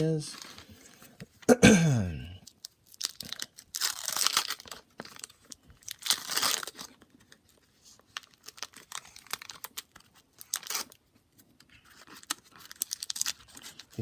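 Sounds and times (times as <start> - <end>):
wrapper tearing: 2.4 - 11.0, 11.7 - 14.0
wrapper crackling: 2.4 - 14.0.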